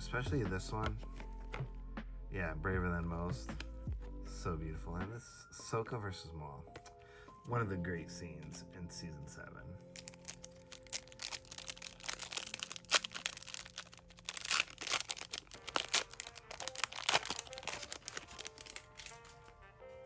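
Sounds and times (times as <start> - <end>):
soft background music: 0.0 - 20.0
foil wrapper crinkling and tearing: 9.9 - 19.6.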